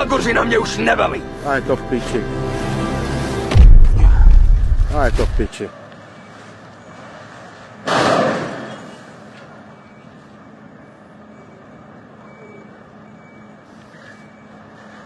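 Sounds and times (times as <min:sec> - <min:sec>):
steady low hum: 0:01.2 - 0:05.5
vehicle loud rush: 0:02.6 - 0:05.5.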